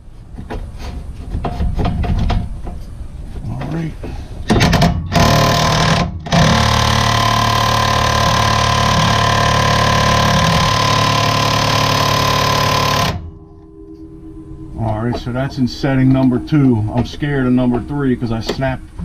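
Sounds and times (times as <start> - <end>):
impact wrench hammering: 4.5 - 13.3.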